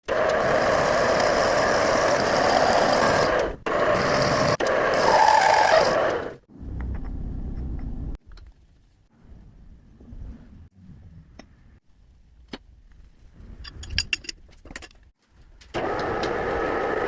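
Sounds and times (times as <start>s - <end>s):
milling machine cutting: 0.0s - 6.4s
low rumble: 6.4s - 12.2s.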